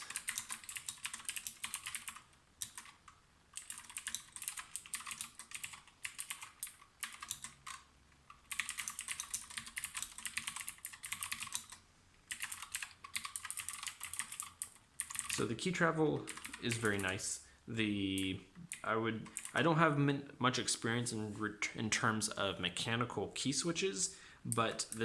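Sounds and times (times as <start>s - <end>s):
mechanical keyboard typing: 0.0s - 15.5s, 16.2s - 17.2s, 18.7s - 19.6s.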